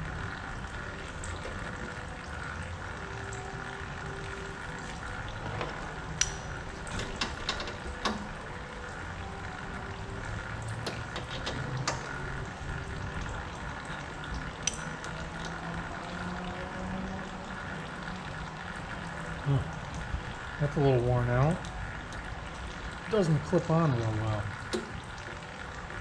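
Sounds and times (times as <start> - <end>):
metallic clicks and knocks: 5.4 - 8.4, 10.8 - 12.1.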